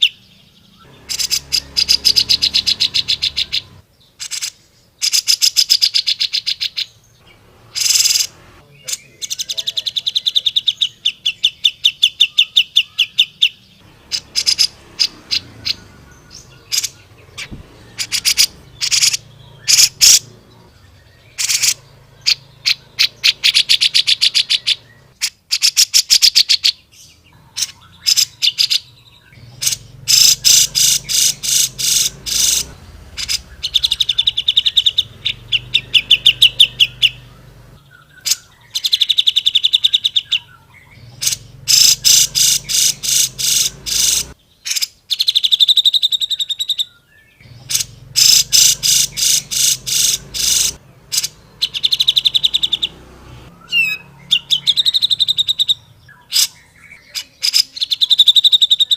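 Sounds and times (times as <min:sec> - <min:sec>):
bulbul trilling: 0:00.8 - 0:46.8, 0:47.4 - 0:58.9.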